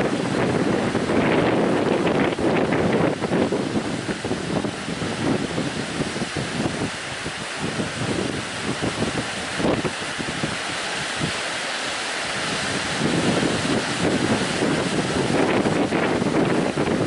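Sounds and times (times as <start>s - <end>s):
sea waves breaking: 0.0s - 17.0s
wind buffeting microphone: 0.0s - 17.0s.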